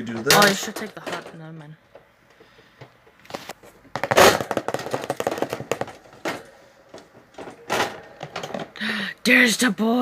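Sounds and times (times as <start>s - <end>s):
cage gear knocking and rattling: 4.0s - 8.8s.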